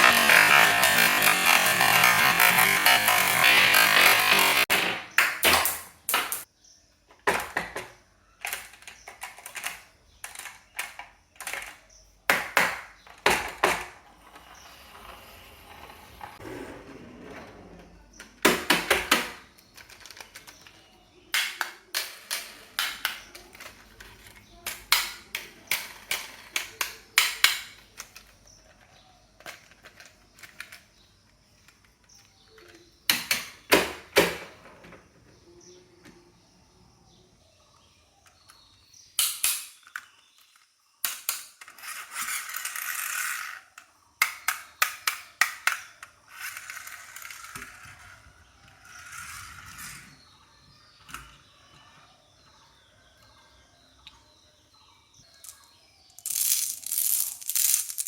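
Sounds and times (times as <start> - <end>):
wooden clacks of toy vehicles: 7.1 - 14.8, 18.2 - 35.4, 38.2 - 50.1.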